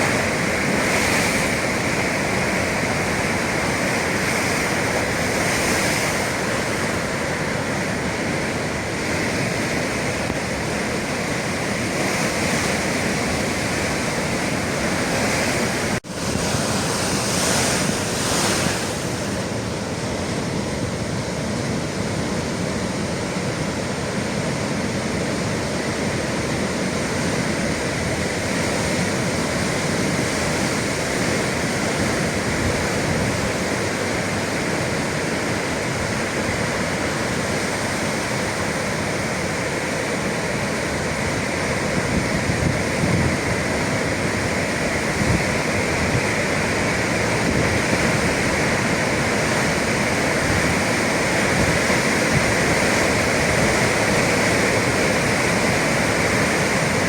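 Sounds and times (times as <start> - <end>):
sea waves breaking: 0.0 - 57.0
wind on microphone: 24.5 - 57.0.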